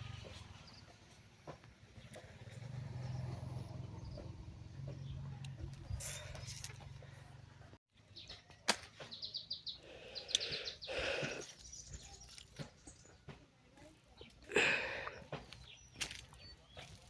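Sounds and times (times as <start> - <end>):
birds chirping trills: 8.0 - 13.3, 14.1 - 17.0.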